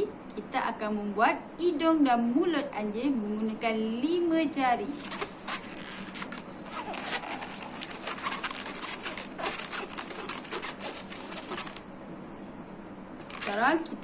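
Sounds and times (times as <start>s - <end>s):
rubber balloon rubbing and squeaking: 4.9s - 11.9s.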